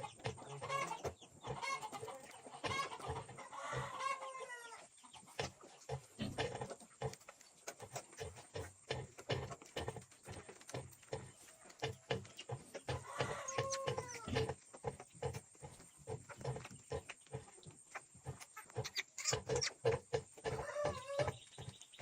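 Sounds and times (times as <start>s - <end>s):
pigs grunting: 5.4s - 21.5s.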